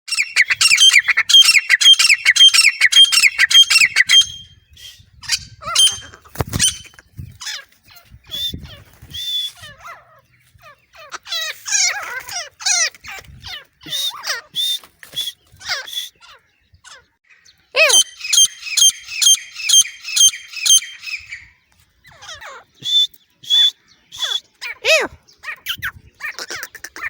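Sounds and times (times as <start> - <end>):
francolin calling: 0.1 - 7.6, 13.6 - 27.0.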